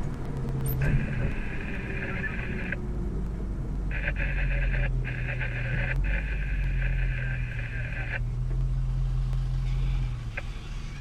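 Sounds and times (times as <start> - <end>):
engine humming: 0.0 - 11.0
garbled radio transmission: 0.8 - 2.8, 3.9 - 8.3.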